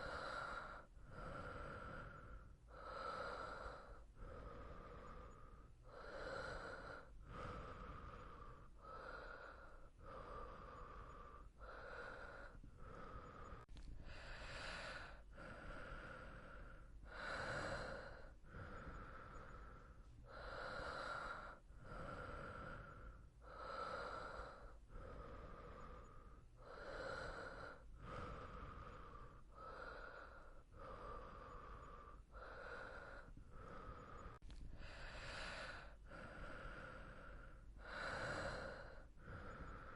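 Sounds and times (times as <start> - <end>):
person breathing softly: 0.0 - 39.9.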